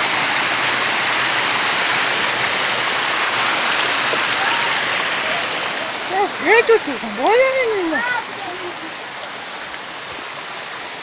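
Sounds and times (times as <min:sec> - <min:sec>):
water pouring down waterfall: 0:00.0 - 0:11.0.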